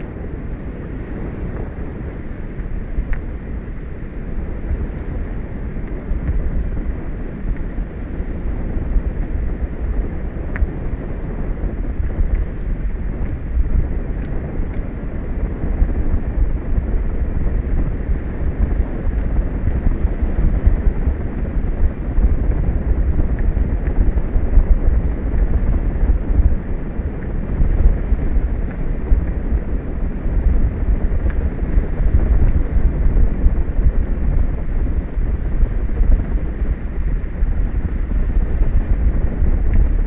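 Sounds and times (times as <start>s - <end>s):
wind buffeting a microphone: 0.0s - 40.0s.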